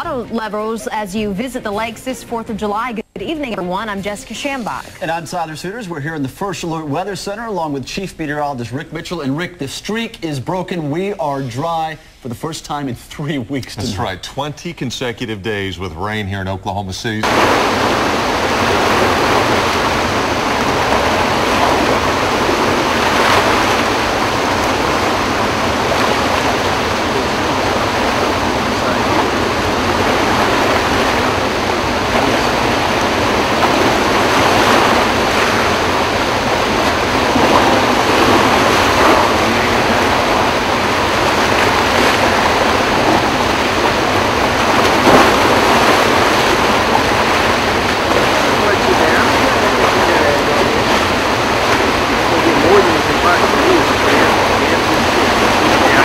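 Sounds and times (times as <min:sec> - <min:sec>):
floodwater rushing through gates: 0:17.2 - 0:56.0.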